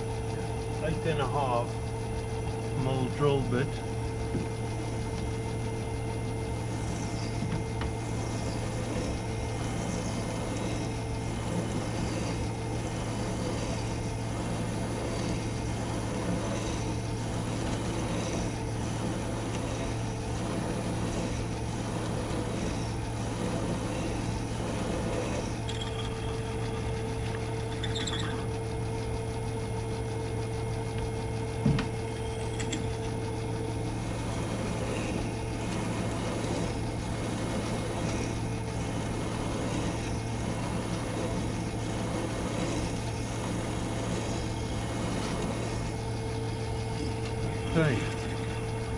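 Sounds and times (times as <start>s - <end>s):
metal lathe humming: 0.0s - 48.9s
drill bit whine: 2.8s - 29.2s, 31.6s - 48.9s.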